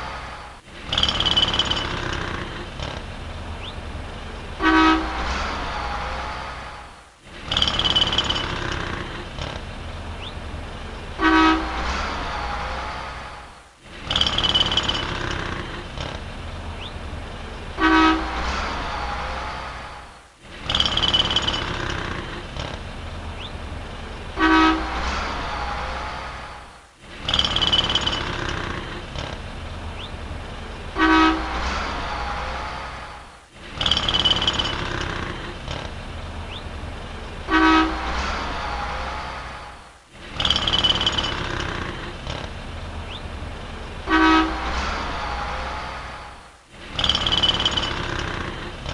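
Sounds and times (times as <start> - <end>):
street traffic rumble: 0.0 - 48.9
car horn honk: 4.6 - 5.3, 11.2 - 11.9, 17.8 - 18.5, 24.4 - 25.0, 31.0 - 31.6, 37.5 - 39.2, 44.0 - 45.0.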